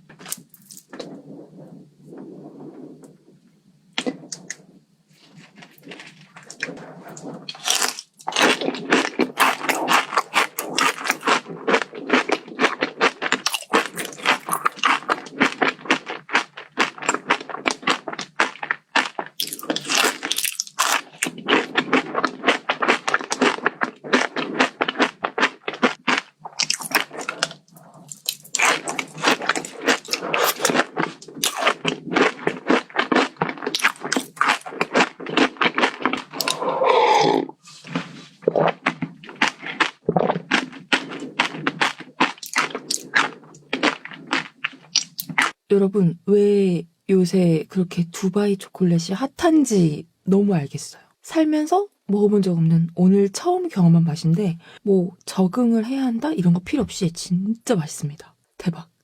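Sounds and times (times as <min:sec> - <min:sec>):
crunching and chewing: 0:00.0 - 0:01.1, 0:05.2 - 0:45.6.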